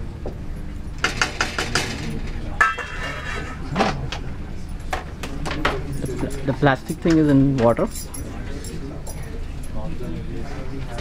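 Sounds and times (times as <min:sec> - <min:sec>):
metal utensils clinking on pot: 0:02.6 - 0:04.0.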